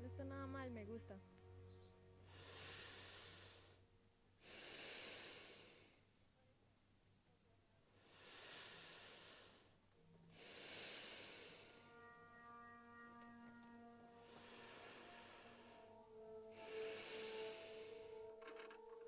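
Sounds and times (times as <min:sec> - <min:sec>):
person breathing slowly: 0:02.2 - 0:06.1, 0:08.0 - 0:12.1, 0:13.2 - 0:19.0.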